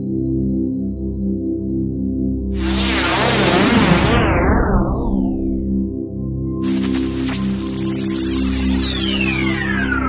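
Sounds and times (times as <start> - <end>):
whoosh sweeping downward: 2.6 - 5.8
synthesizer drone: 2.6 - 10.0.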